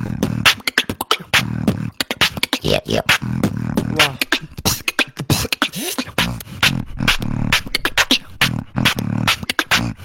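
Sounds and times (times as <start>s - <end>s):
beatboxing: 0.0s - 10.0s.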